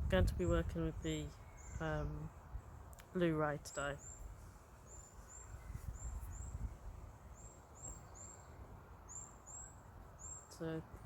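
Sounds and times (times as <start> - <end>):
wind rumbling on microphone: 0.0 - 9.2
bird chirping high: 1.2 - 2.3.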